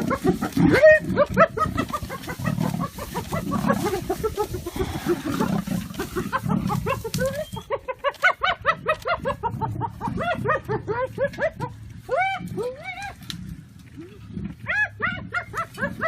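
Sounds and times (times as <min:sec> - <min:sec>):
rough low rumble: 0:08.6 - 0:16.0.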